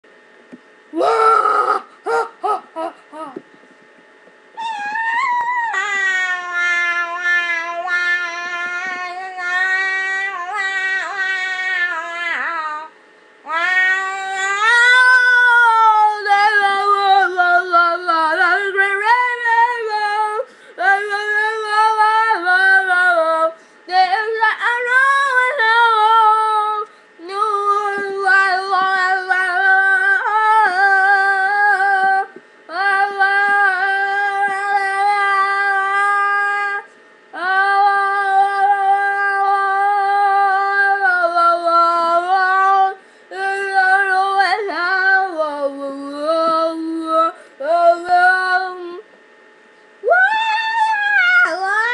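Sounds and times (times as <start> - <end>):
high voice wailing: 1.0 - 3.4, 4.6 - 12.9.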